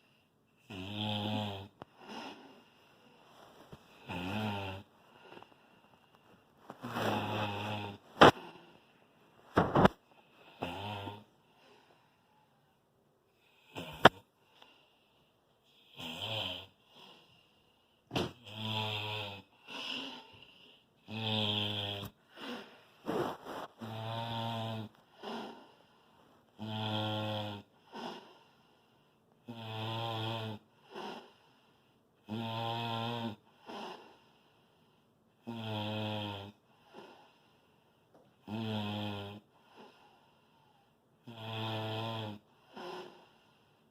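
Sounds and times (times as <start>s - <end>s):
loud snoring: 0.6s - 2.7s, 3.9s - 5.5s, 6.8s - 8.8s, 9.5s - 11.3s, 13.6s - 14.2s, 15.7s - 17.2s, 18.2s - 20.4s, 21.0s - 25.8s, 26.6s - 28.5s, 29.4s - 31.4s, 32.2s - 34.3s, 35.4s - 37.4s, 38.4s - 40.0s, 41.2s - 43.6s.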